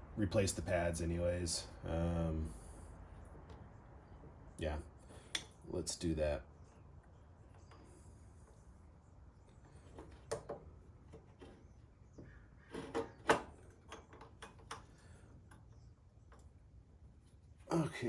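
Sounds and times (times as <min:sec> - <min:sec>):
light clicks and knocks of metal parts: 0:05.0 - 0:05.8, 0:09.4 - 0:16.8.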